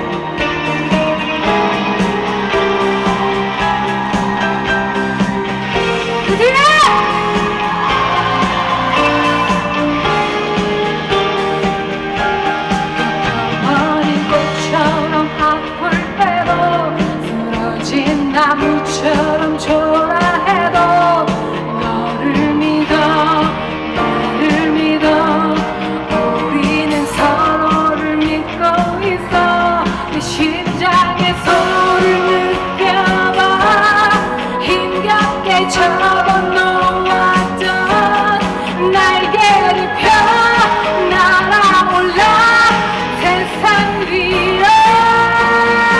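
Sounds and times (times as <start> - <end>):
live band playing pop-rock: 0.0 - 45.9
woman singing: 0.0 - 45.9.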